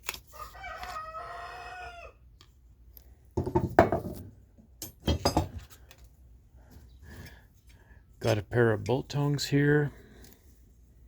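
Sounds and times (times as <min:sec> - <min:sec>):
rooster crowing: 0:00.3 - 0:02.2.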